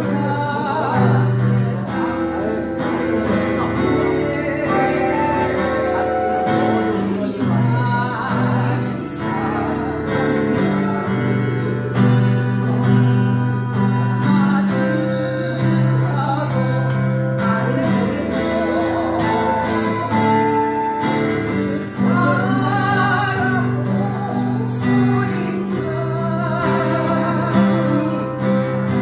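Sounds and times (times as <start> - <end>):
strummed acoustic guitar: 0.0 - 29.0
flute playing slow melody: 2.6 - 9.8.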